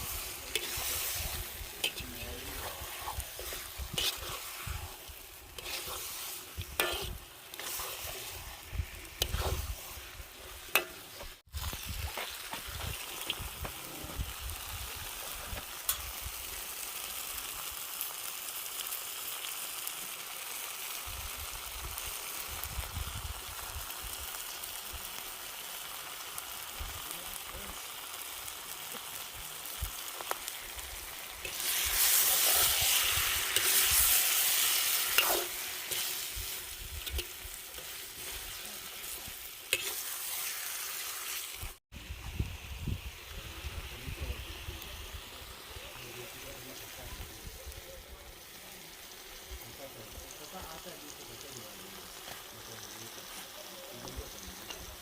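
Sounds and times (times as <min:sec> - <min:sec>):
utensil scraping a pot: 0:00.0 - 0:11.4, 0:31.4 - 0:36.4, 0:37.0 - 0:40.3
food sizzling in a pot: 0:00.0 - 0:55.0.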